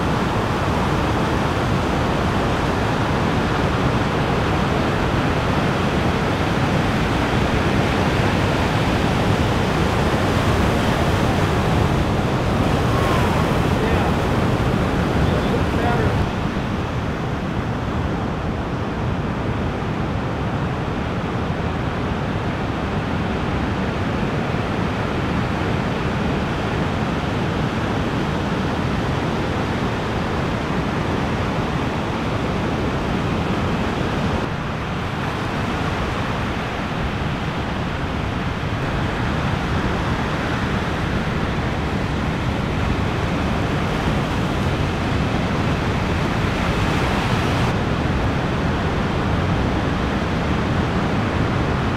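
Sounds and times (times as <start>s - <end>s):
ocean waves breaking: 0.0s - 18.1s, 32.4s - 51.9s.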